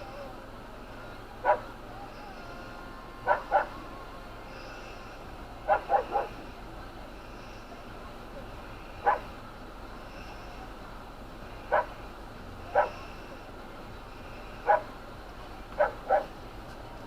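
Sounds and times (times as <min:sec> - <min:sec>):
steady background noise: 0:00.0 - 0:17.0
dog barking: 0:01.4 - 0:01.7, 0:03.2 - 0:03.8, 0:05.7 - 0:06.5, 0:09.0 - 0:09.4, 0:11.7 - 0:12.0, 0:12.7 - 0:13.0, 0:14.6 - 0:15.0, 0:15.8 - 0:16.4.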